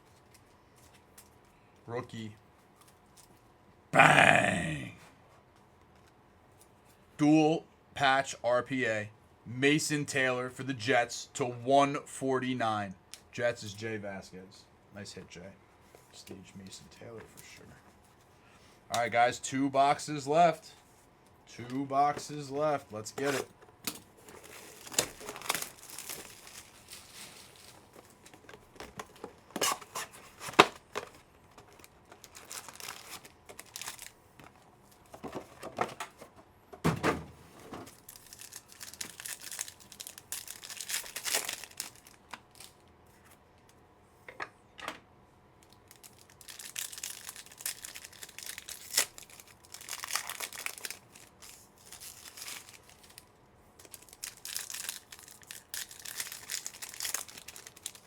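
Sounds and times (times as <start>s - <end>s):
wrappers torn and crinkled: 24.2s - 28.9s, 29.6s - 34.2s, 37.9s - 42.9s, 45.6s - 58.0s.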